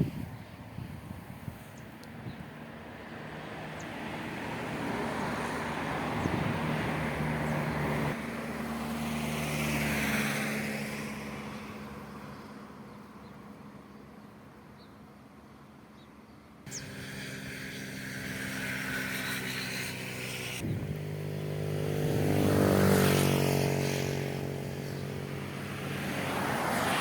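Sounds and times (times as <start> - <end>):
vehicle engine hum: 0.0 - 27.0.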